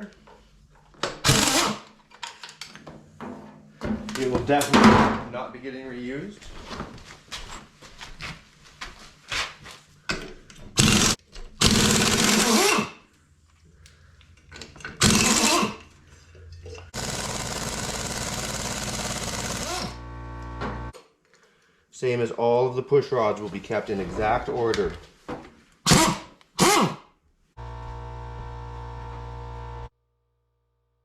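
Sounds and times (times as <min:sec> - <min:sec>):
clatter of parts and bolts: 0:00.8 - 0:03.0, 0:14.2 - 0:19.7
impact wrench running: 0:01.2 - 0:01.9, 0:10.8 - 0:13.0, 0:15.0 - 0:15.9, 0:16.9 - 0:20.9, 0:25.9 - 0:27.0.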